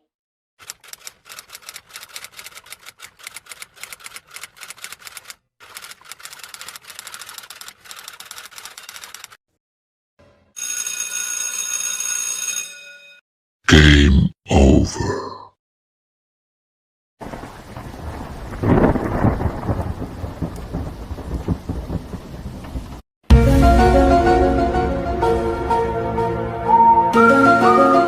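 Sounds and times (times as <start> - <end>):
typewriter keys clacking: 0.6 - 9.4
typewriter bell ringing: 8.6 - 9.3, 10.6 - 13.2.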